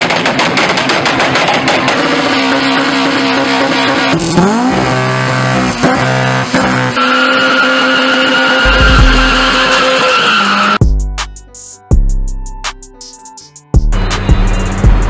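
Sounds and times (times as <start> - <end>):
car engine revving: 0.2 - 10.8.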